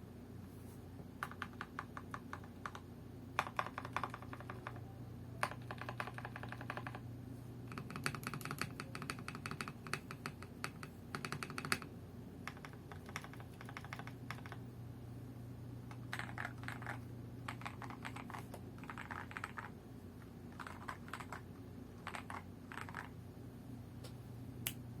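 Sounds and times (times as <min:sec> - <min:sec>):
steady low hum: 0:00.0 - 0:25.0
mechanical keyboard typing: 0:01.2 - 0:02.8, 0:03.4 - 0:04.8, 0:05.4 - 0:07.0, 0:07.7 - 0:14.6, 0:15.9 - 0:19.7, 0:20.5 - 0:23.1.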